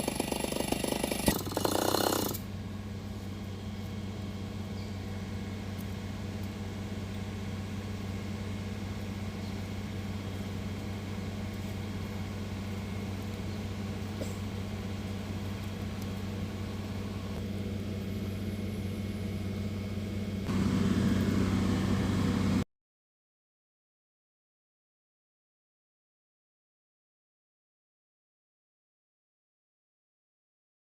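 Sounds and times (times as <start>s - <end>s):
engine idling: 0.0s - 22.6s.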